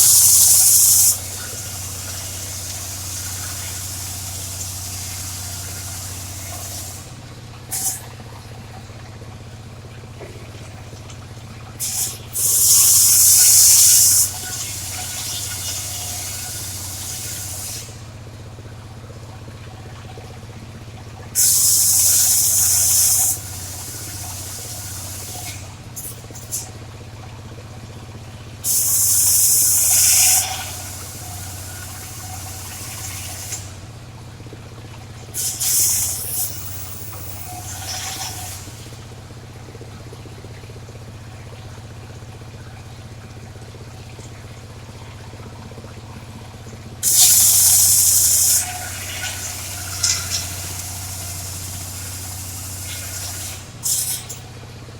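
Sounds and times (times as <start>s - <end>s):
circular saw engine running: 0.0s - 7.2s, 12.0s - 18.1s, 36.0s - 39.0s, 47.0s - 54.4s.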